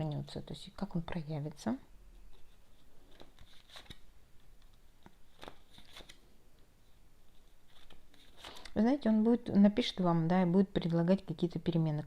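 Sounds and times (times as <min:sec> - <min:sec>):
cards rustling: 0:02.3 - 0:06.3, 0:07.3 - 0:08.8.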